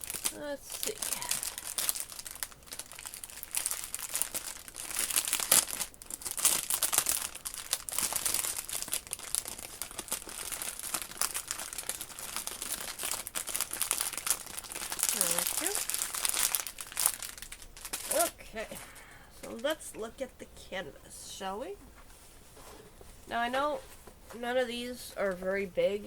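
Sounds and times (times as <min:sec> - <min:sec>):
plastic packaging crinkling: 0:00.0 - 0:18.5.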